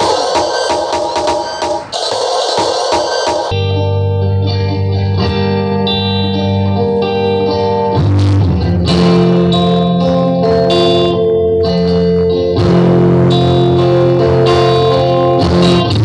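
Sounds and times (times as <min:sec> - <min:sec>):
sustained guitar-like chords: 0:03.2 - 0:16.0.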